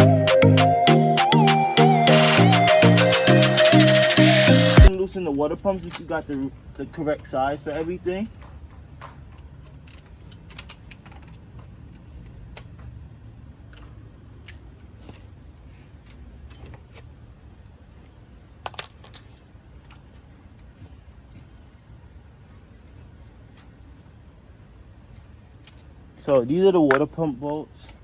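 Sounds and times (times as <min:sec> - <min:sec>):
metallic clicks of hand tools: 0:09.6 - 0:12.8.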